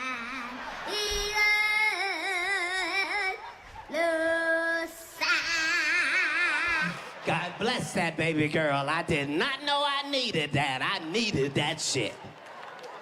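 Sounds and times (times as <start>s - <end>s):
girl singing: 0.0s - 7.0s.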